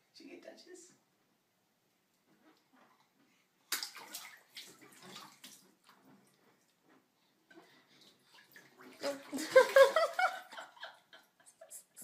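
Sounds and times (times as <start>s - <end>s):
water splashing: 3.7s - 6.4s, 7.7s - 10.5s.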